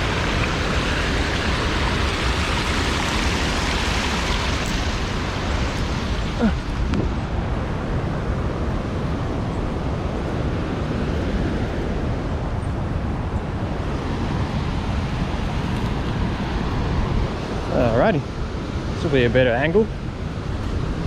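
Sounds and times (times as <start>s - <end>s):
floodwater rushing down a creek: 0.0s - 11.0s.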